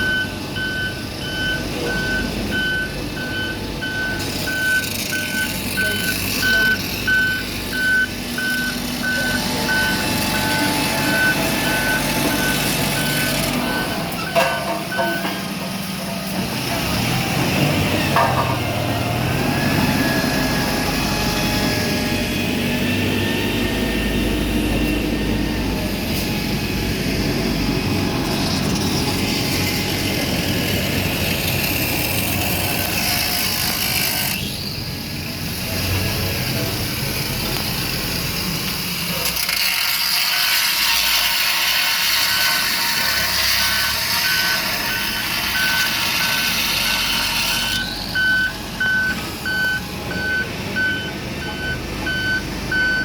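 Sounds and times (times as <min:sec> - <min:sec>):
reversing alarm beeping: 0:00.0 - 0:15.6, 0:18.8 - 0:22.2, 0:42.2 - 0:53.0
diesel construction vehicle running: 0:00.0 - 0:53.0.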